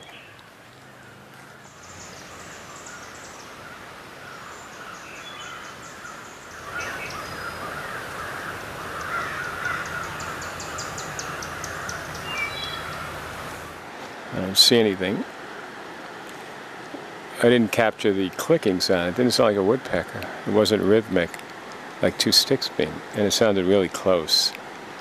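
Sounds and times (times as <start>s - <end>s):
chorus of agitated birds calling: 0.0s - 13.7s.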